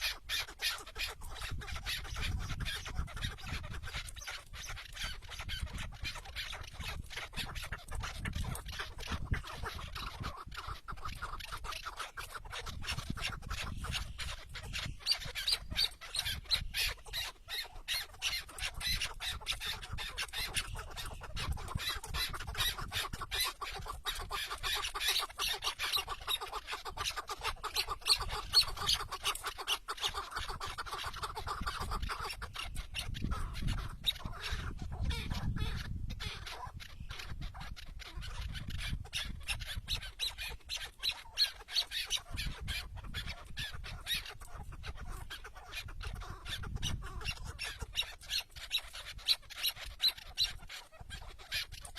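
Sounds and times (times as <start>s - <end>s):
partridge clucking calls: 0.0s - 51.9s.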